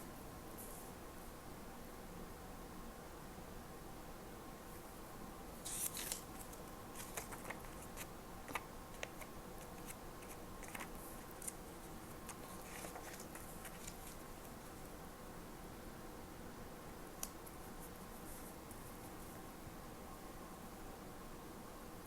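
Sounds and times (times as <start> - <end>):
faint steady hum: 0.0 - 22.0
paper rustling: 5.6 - 14.6
scissors snipping paper: 5.7 - 11.6.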